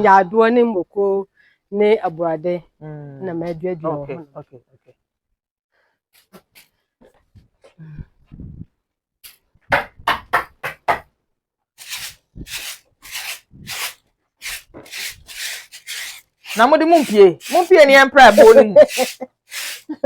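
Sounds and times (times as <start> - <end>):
broom sweeping sawdust floor: 11.8 - 20.0.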